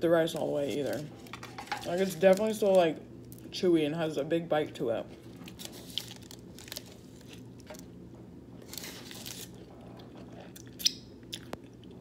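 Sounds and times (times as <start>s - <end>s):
person chewing food: 8.6s - 12.0s.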